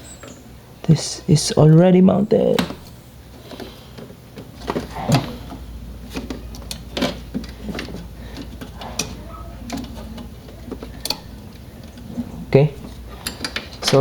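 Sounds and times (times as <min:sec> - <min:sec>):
clicks and knocks of handled cooler: 0:02.5 - 0:11.2.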